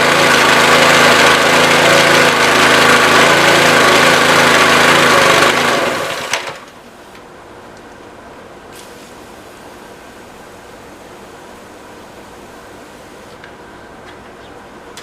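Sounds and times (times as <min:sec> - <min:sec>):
engine running down: 0:00.0 - 0:06.4
pressure washer engine running: 0:00.0 - 0:06.6.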